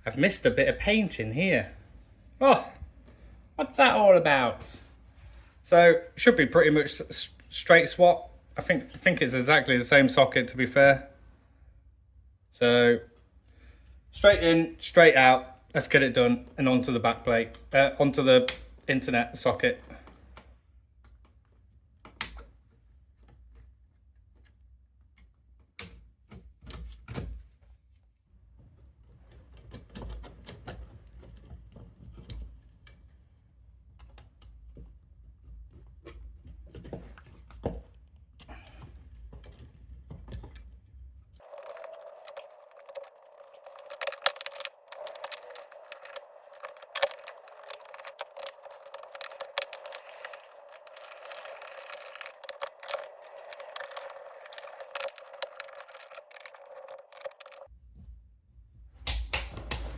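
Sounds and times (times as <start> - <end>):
hand tools clicking and tapping: 41.4 - 57.7.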